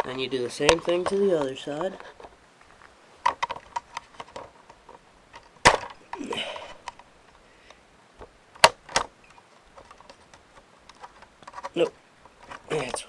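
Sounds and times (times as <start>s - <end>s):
loud sharp plastic cracks: 5.4s - 6.1s, 8.2s - 11.8s.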